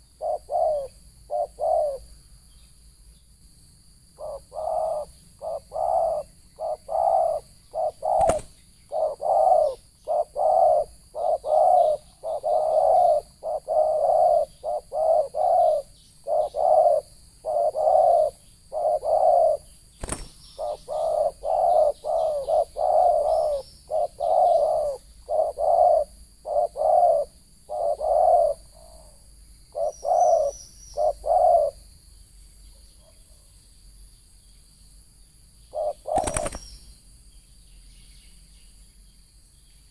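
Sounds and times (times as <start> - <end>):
dove cooing: 0.0 - 2.2, 4.2 - 31.8, 35.7 - 36.7.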